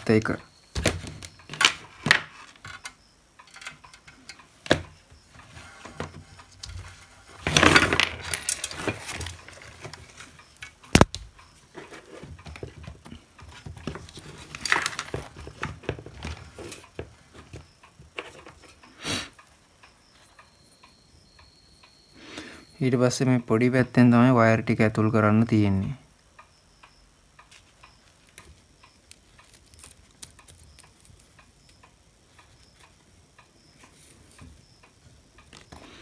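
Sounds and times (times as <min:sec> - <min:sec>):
plastic parts clicking: 0:00.0 - 0:17.6, 0:27.4 - 0:33.0
rustling and scraping: 0:03.5 - 0:10.8, 0:11.6 - 0:18.8.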